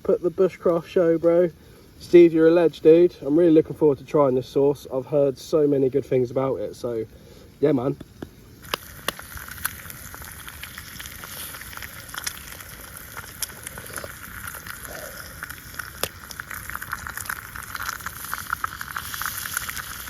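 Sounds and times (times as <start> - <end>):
bacon sizzling in a frying pan: 7.7 - 20.0.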